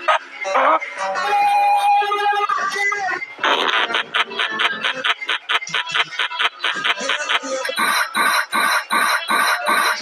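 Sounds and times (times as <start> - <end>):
music with fast pulsing beat: 3.4 - 10.0.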